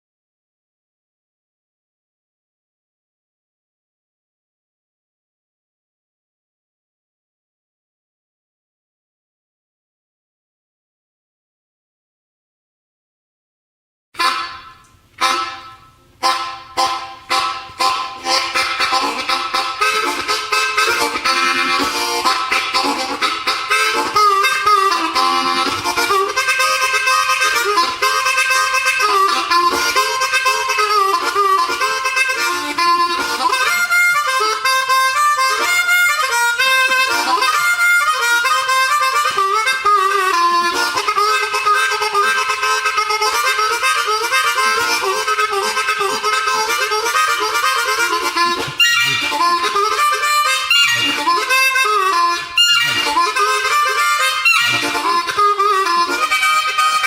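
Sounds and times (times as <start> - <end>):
background music melody: 14.2 - 57.0.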